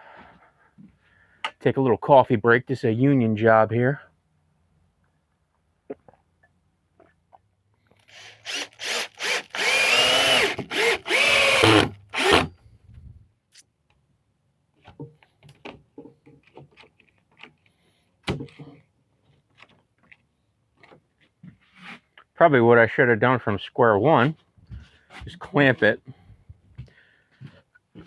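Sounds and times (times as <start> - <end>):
power drill driving a screw: 8.0 - 12.5.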